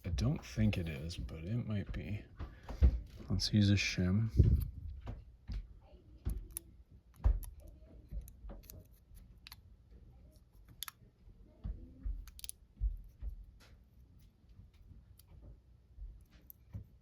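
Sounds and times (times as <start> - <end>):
metal tools clicking on a padlock: 12.3 - 12.6.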